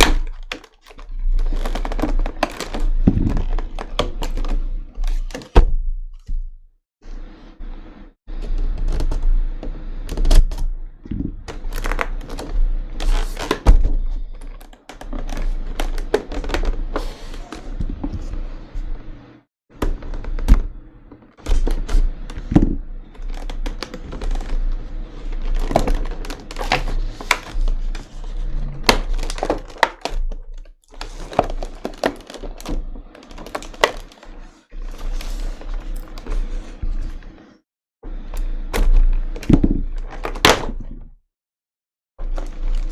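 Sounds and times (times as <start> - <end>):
plastic packaging crackling: 0.0 - 4.3, 23.2 - 28.0, 28.8 - 34.2
plastic packaging clicking and knocking: 0.0 - 6.5, 11.4 - 18.3, 19.8 - 24.8, 25.4 - 28.1, 28.8 - 34.2, 38.8 - 41.0.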